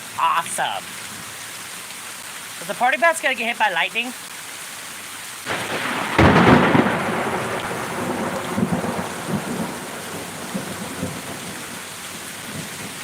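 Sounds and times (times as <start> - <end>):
steady rain: 0.0 - 13.0
thunder cracking and rumbling: 5.5 - 13.0.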